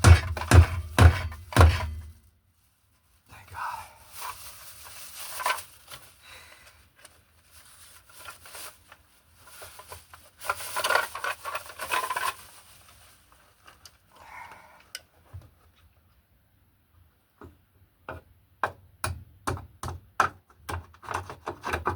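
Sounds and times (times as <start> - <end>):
rustling and crunching handling: 0.0 - 16.2.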